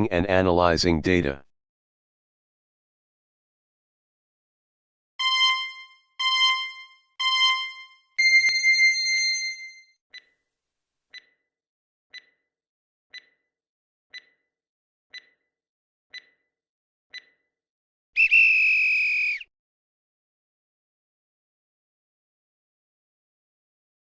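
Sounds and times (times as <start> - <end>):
loud alarm-like tone: 5.2 - 9.8.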